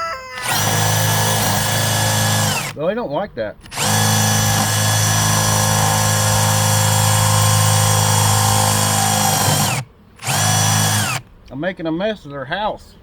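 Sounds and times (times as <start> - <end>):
power drill boring into wood: 0.4 - 2.8, 3.7 - 11.2.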